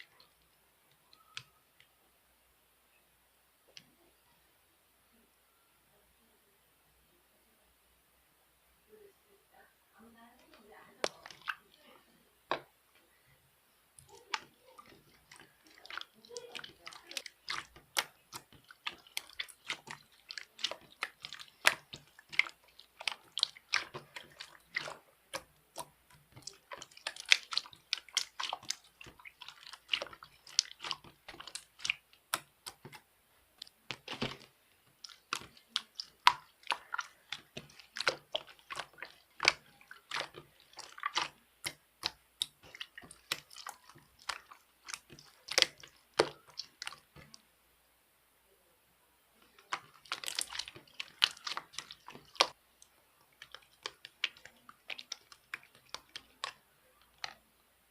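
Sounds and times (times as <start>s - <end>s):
close chewing crunches: 14.0s - 32.9s, 49.5s - 52.6s.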